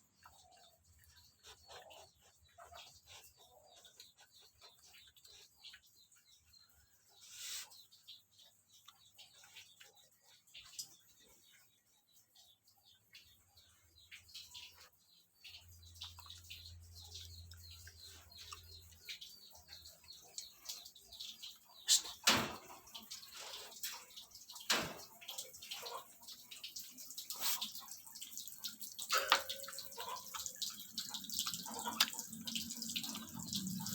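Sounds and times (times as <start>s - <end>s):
animal chewing wet smacking: 27.3s - 33.9s.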